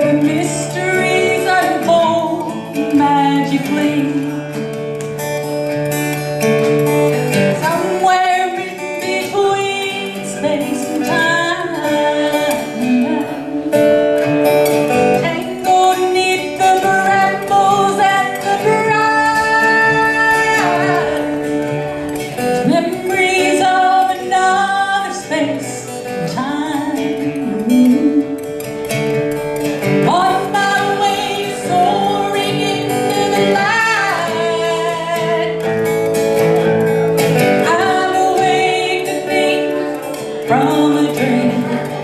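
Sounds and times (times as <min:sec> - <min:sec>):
acoustic guitar: 0:00.0 - 0:42.0.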